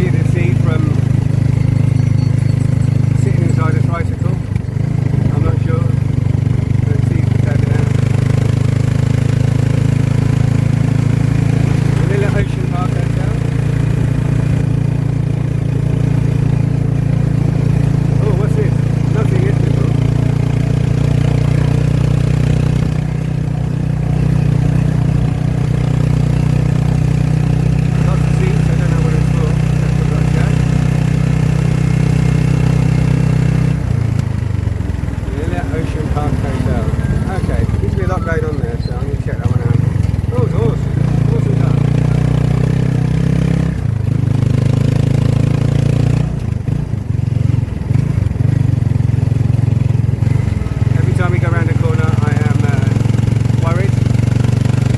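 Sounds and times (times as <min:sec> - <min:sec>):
motorcycle engine running: 0:00.0 - 0:54.9.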